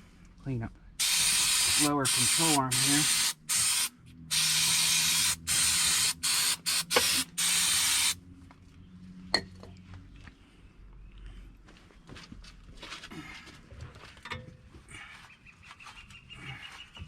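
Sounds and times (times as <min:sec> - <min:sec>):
aerosol spray hissing: 0:01.0 - 0:08.2.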